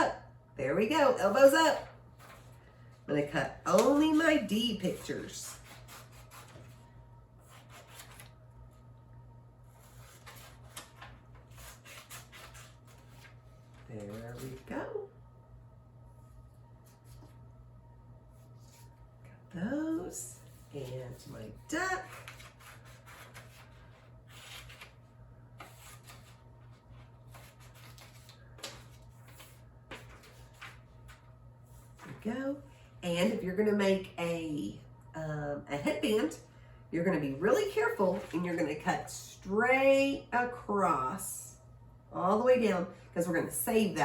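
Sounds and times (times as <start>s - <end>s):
low steady hum: 0.0s - 44.0s
paper rustling: 2.2s - 2.7s, 7.5s - 8.4s, 9.7s - 14.7s, 22.0s - 32.2s, 37.9s - 38.6s
scissors cutting paper: 4.9s - 6.7s, 7.5s - 8.3s, 9.7s - 13.3s, 22.0s - 25.0s.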